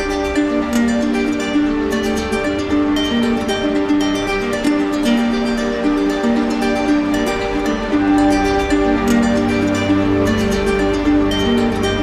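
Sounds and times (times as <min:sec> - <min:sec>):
plucked string instrument melody: 0:00.0 - 0:12.0.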